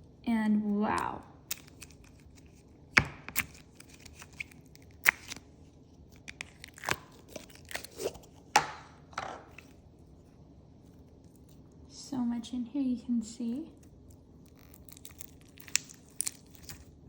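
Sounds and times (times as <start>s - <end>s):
crunchy slime crackling: 0.7s - 8.8s, 13.7s - 17.0s.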